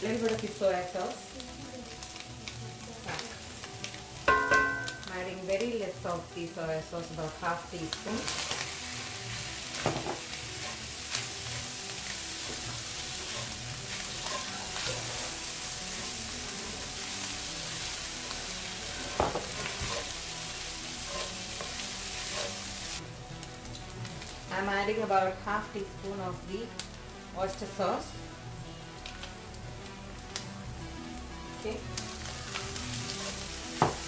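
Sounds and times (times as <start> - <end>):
food sizzling in a pan: 0.0 - 34.0
spatula knocking against pan: 4.3 - 4.9.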